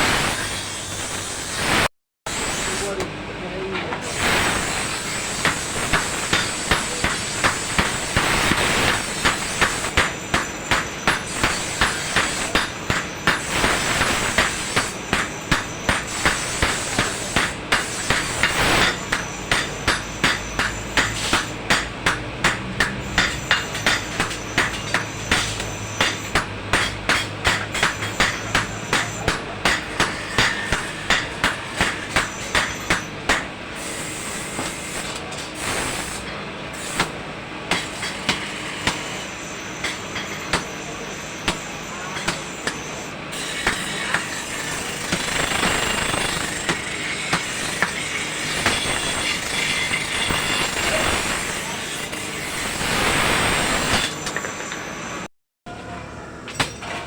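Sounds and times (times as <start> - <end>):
hammer striking metal on anvil: 4.9 - 33.6, 36.2 - 52.2, 56.5 - 57.0.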